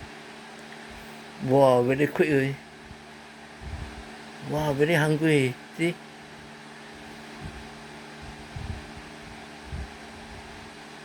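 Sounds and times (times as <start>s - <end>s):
mechanical fan humming: 0.0s - 11.0s
soft low thumps: 2.8s - 4.2s, 6.4s - 10.7s.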